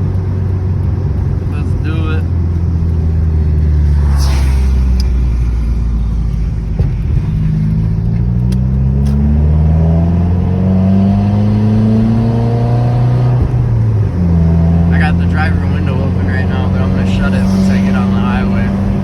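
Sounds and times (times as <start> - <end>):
car engine accelerating: 0.0 - 19.0.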